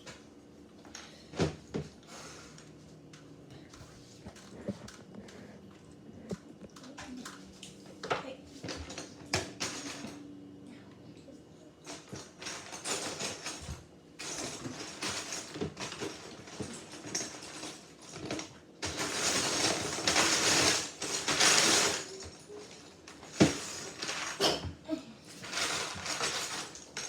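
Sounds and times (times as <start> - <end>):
rummaging through box of bricks: 12.0 - 24.4, 25.3 - 27.0.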